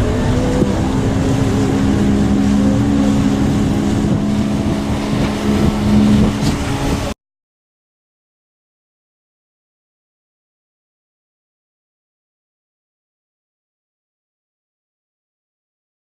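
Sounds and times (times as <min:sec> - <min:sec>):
motorboat engine running: 0:00.0 - 0:07.2
wind on microphone: 0:00.0 - 0:07.2.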